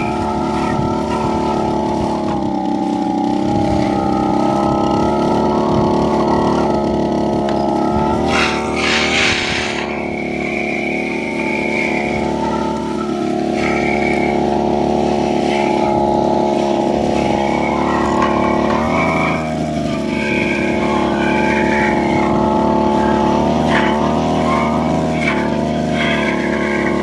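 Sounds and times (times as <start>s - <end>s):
brush cutter engine running: 0.0s - 27.0s.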